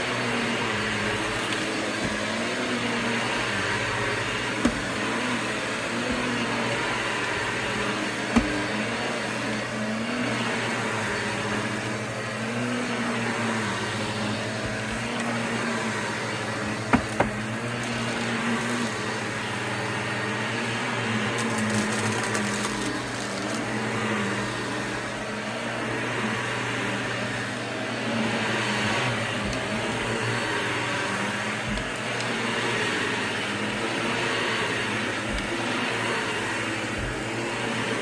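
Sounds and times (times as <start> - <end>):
vacuum cleaner running: 0.0 - 38.0
debris clicking in vacuum: 21.3 - 23.7.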